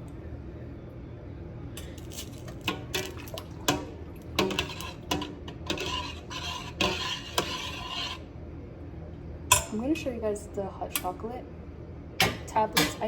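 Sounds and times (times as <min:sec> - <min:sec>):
utensil scraping pot: 0:02.0 - 0:08.3
utensil clinking against pot: 0:02.1 - 0:08.2.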